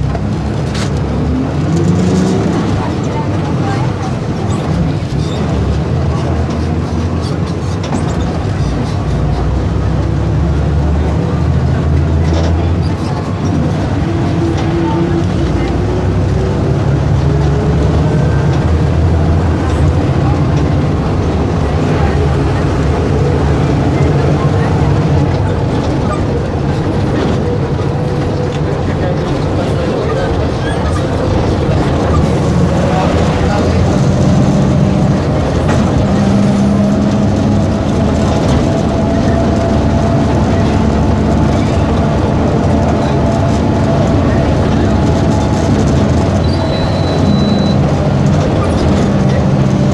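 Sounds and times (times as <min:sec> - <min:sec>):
diesel bus engine rumbling: 0:00.0 - 0:49.9.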